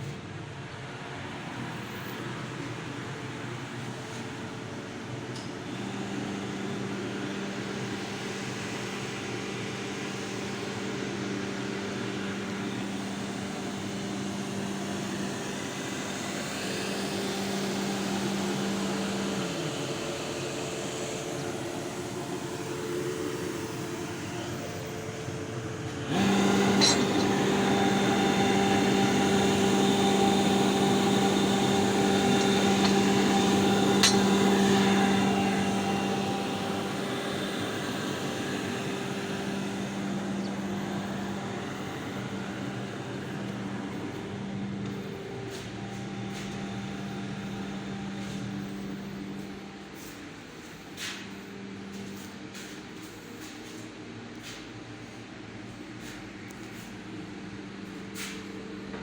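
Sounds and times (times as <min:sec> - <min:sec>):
motor hum: 0:05.7 - 0:59.0.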